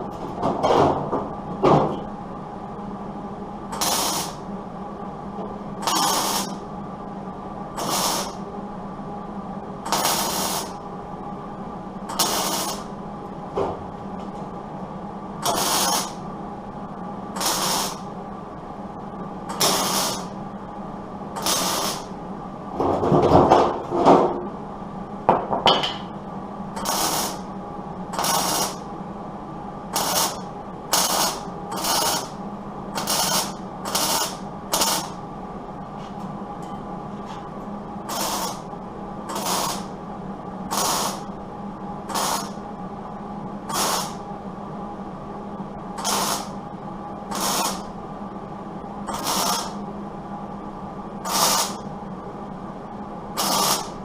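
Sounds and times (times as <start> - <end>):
steady low hum: 0.0 - 54.0
welder crackling hiss: 3.8 - 4.4, 5.8 - 6.6, 7.8 - 8.4, 9.9 - 10.8, 12.2 - 12.9, 15.4 - 16.2, 17.4 - 18.1, 19.6 - 20.3, 21.4 - 22.1, 26.8 - 27.4, 28.2 - 28.8, 30.0 - 32.4, 33.0 - 35.2, 38.1 - 38.7, 39.3 - 39.9, 40.7 - 41.3, 42.1 - 42.6, 43.7 - 44.2, 46.0 - 46.5, 47.3 - 47.9, 49.2 - 49.7, 51.3 - 51.8, 53.4 - 54.0.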